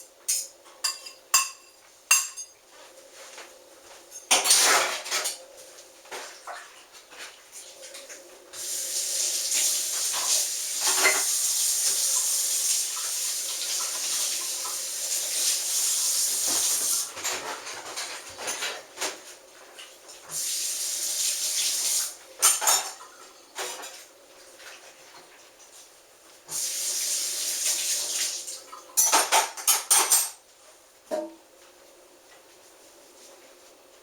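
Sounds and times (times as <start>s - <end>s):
dishes and cutlery clattering: 0.3s - 2.6s, 4.1s - 5.4s, 10.2s - 11.4s, 17.1s - 19.2s, 22.4s - 24.1s, 29.0s - 30.4s
tap water running into sink: 8.6s - 17.3s, 26.5s - 29.4s.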